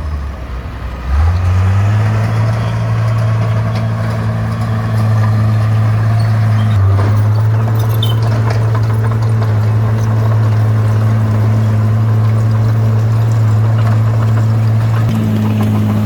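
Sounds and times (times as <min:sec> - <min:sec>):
bulldozer diesel engine running: 0:00.0 - 0:16.0
faint clanking: 0:03.0 - 0:16.0.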